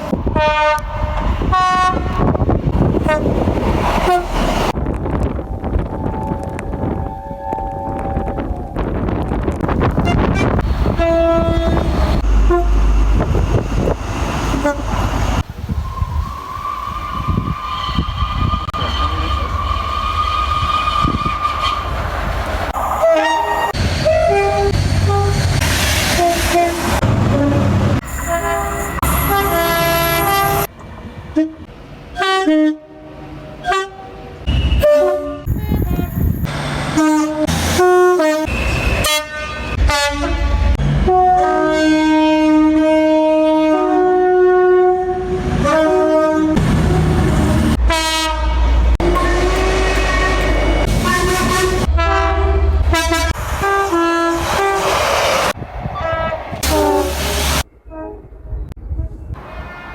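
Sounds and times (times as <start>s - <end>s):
trains running: 0.0s - 32.2s, 33.2s - 41.3s, 45.2s - 57.9s
two-tone train horn blasts: 0.3s - 2.4s, 4.0s - 4.4s, 9.9s - 13.3s, 14.5s - 15.1s, 23.0s - 25.4s, 26.2s - 30.7s, 31.3s - 36.3s, 37.0s - 47.2s, 47.8s - 54.8s, 56.0s - 57.2s.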